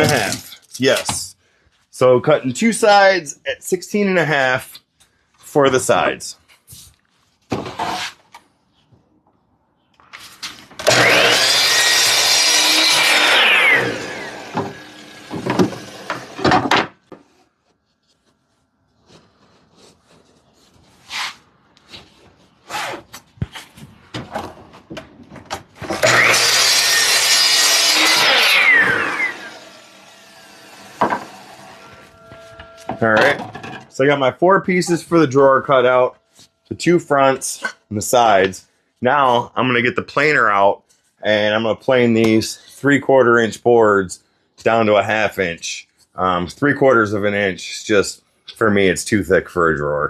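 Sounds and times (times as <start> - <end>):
power saw cutting wood: 10.8 - 16.6, 25.9 - 33.5
boards knocking and clattering: 14.5 - 17.3, 31.0 - 31.4, 32.6 - 33.9.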